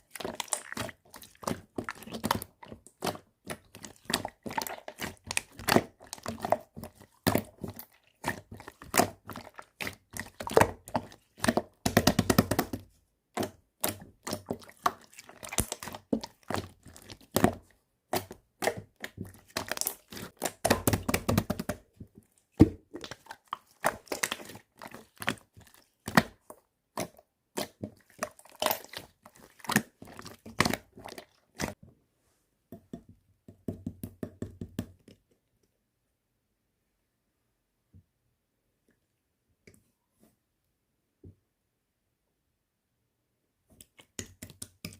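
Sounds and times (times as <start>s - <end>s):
slime popping and crackling: 0.1s - 12.8s, 13.4s - 21.8s, 22.8s - 26.4s, 27.0s - 31.8s.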